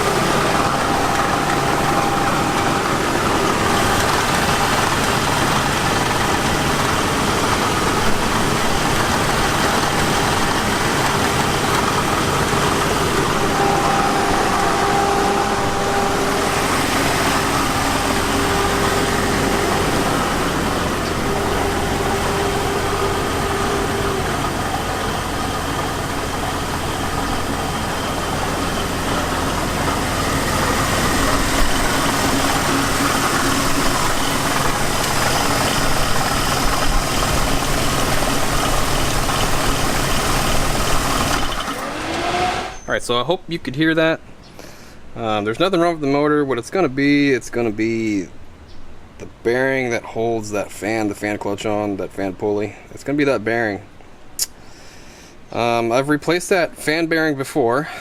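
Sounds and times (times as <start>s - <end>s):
engine idling with knocking: 0.0s - 42.8s.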